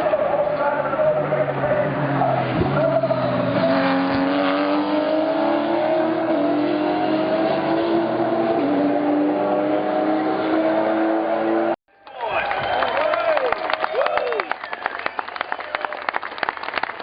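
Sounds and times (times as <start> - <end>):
race car engine at full throttle: 0.0 - 11.8.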